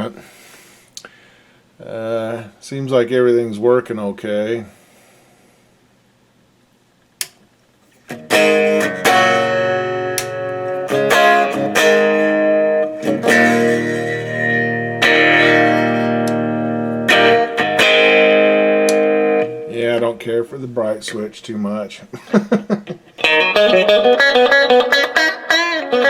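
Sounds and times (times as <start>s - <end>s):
amplifier click: 7.2s - 7.5s, 10.1s - 10.4s, 16.1s - 16.4s, 18.8s - 19.5s
electric guitar chords strummed: 8.0s - 20.2s, 23.2s - 26.0s.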